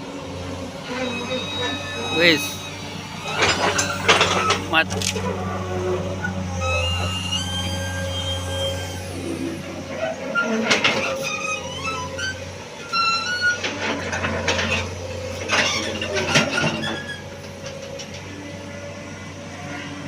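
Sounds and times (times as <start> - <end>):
diesel engine hum: 0.0 - 20.0
high metallic squeals: 0.4 - 17.8.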